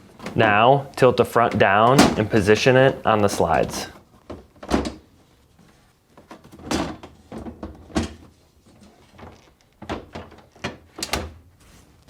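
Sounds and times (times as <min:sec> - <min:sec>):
freezer drawer knocks and clunks: 0:01.6 - 0:02.4.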